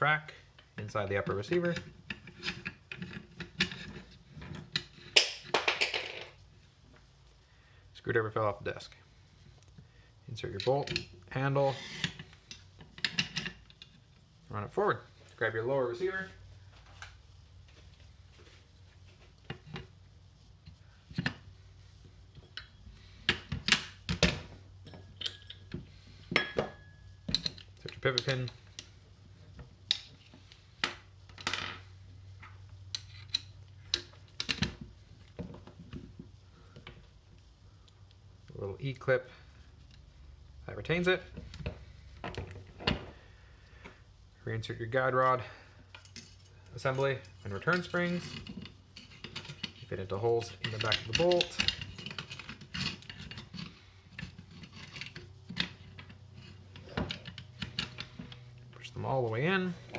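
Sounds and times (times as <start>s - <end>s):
metal parts clicking and clinking: 0.6s - 6.4s, 10.4s - 14.0s, 22.4s - 36.2s, 44.6s - 59.9s.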